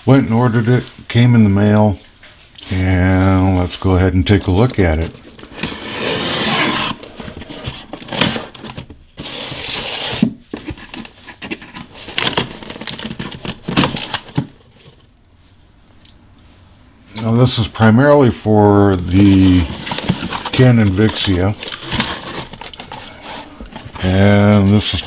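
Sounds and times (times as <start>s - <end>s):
package rustling and tearing: 4.3s - 15.1s, 19.0s - 25.0s.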